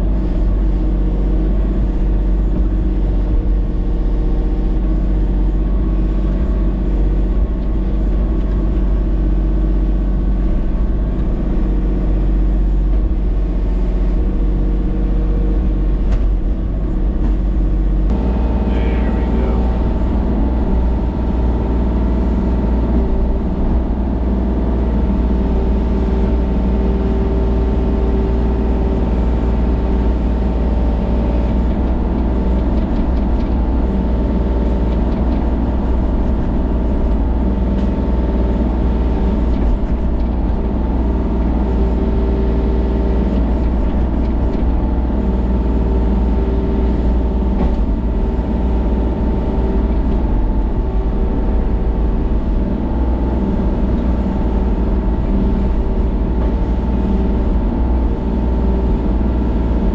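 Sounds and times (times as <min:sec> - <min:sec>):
excavator diesel engine running: 0:00.0 - 0:59.9.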